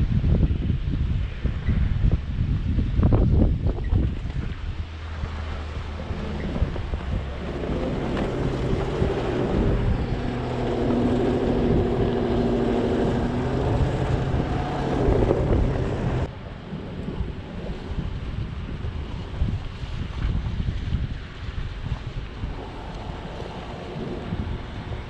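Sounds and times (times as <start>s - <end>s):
off-road vehicle engine revving: 5.0s - 16.3s, 22.4s - 25.0s.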